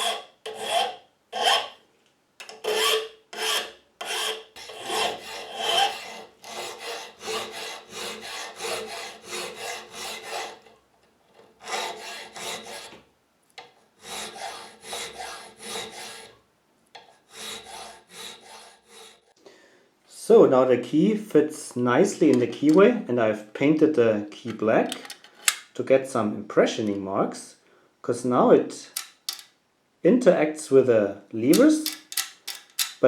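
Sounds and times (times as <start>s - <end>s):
hand file rasping on key: 0.0s - 1.8s, 2.6s - 10.7s, 11.6s - 13.0s, 14.0s - 16.3s, 17.3s - 19.3s.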